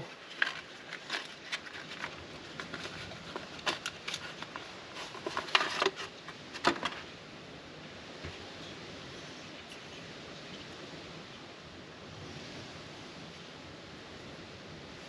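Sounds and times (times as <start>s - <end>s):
hands handling parts: 0.0s - 7.1s.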